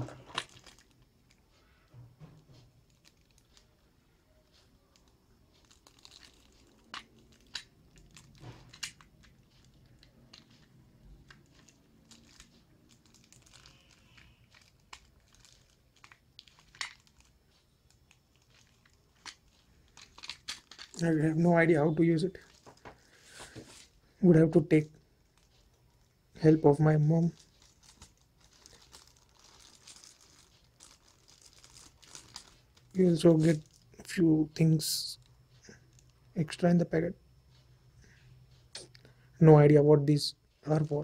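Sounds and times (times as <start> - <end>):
plastic packet crinkling: 0.0 - 1.0, 5.0 - 21.7, 22.3 - 23.6, 26.8 - 34.0.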